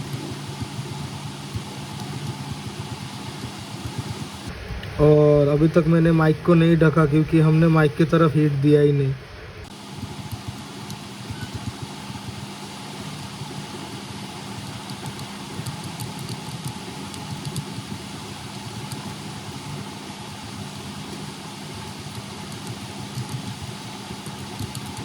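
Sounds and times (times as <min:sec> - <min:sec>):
hot-air station blowing: 0:00.0 - 0:15.6.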